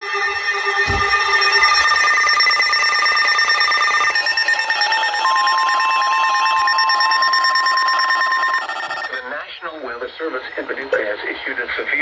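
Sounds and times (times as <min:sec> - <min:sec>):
electronic background music: 0:00.0 - 0:09.2
steady single-pitched alert tone: 0:00.0 - 0:09.3.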